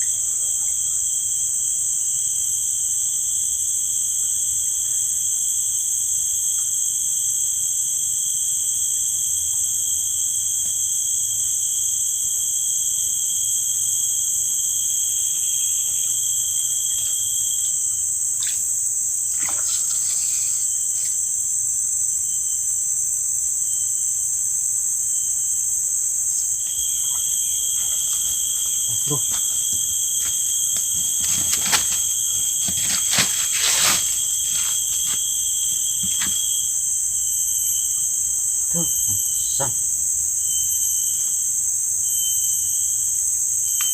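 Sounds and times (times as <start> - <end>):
crickets chirping: 0.0 - 43.9
brief rustle: 27.8 - 36.5.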